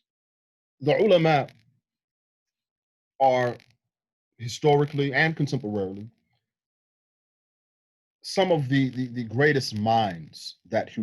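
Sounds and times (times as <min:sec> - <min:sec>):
man speaking: 0:00.8 - 0:01.5, 0:03.2 - 0:03.6, 0:04.4 - 0:06.1, 0:08.3 - 0:11.0.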